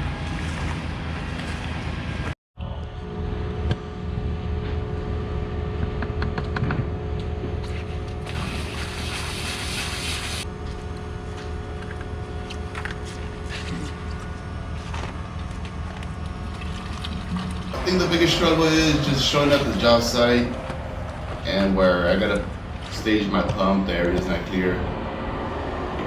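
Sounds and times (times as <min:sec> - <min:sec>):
diesel engine rumbling: 0:10.5 - 0:26.0.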